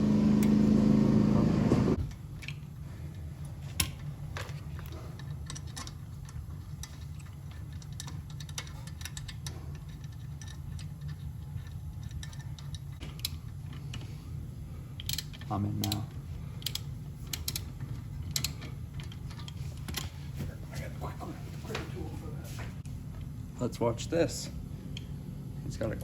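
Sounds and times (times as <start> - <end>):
loud droning: 0.0 - 2.0
steady low hum: 0.0 - 26.0
metallic clicks of parts handled: 2.1 - 14.1, 15.0 - 20.1.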